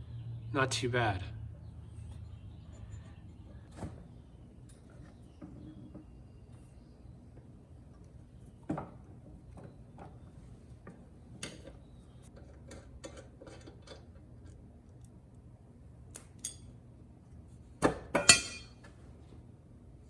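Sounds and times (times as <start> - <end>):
tools clinking on workbench: 18.2 - 18.9.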